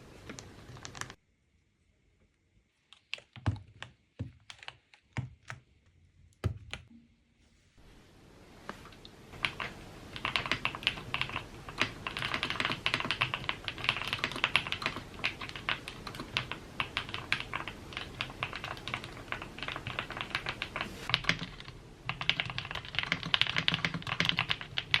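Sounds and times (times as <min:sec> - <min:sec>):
mechanical keyboard typing: 0:00.3 - 0:01.2, 0:09.4 - 0:25.0.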